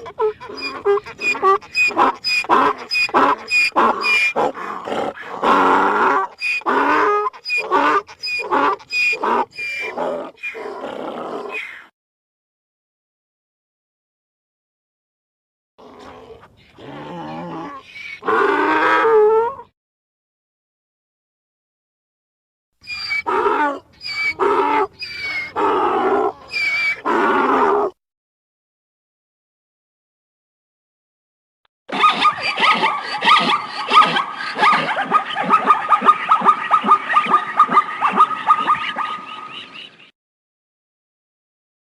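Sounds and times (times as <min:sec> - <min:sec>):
zebra barking bray: 0:00.0 - 0:04.6, 0:31.9 - 0:39.9
harsh animal calls: 0:00.0 - 0:11.9, 0:22.8 - 0:28.0, 0:31.9 - 0:40.0.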